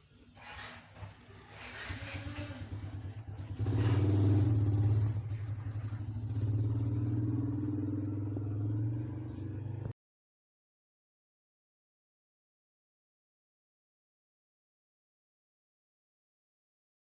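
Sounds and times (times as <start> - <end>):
engine pulsing hum: 1.4 - 9.9.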